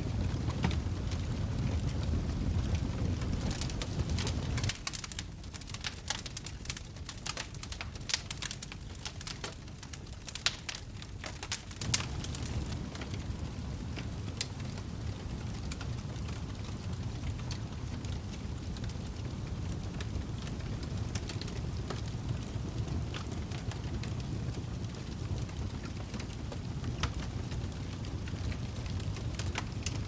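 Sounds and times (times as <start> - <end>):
wood fire crackling and popping: 0.0 - 30.0.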